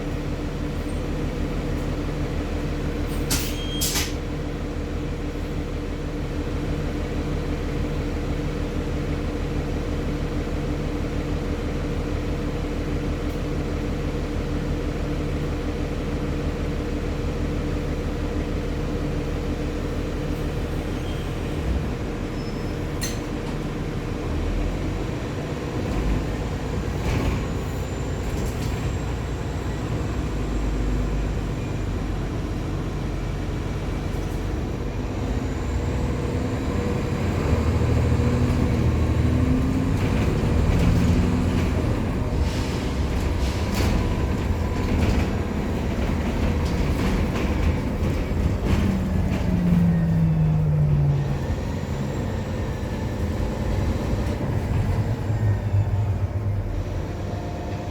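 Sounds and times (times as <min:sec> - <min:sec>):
bus engine drone: 0:00.0 - 0:57.9.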